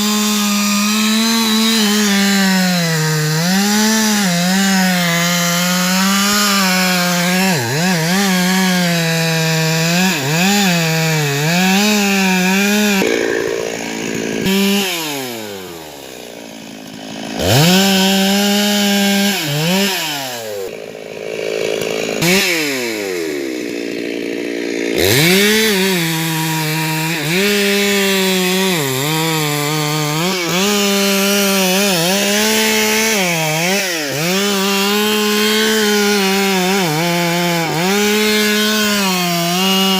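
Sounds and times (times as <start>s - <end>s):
chainsaw cutting tree trunk: 0.0s - 39.9s.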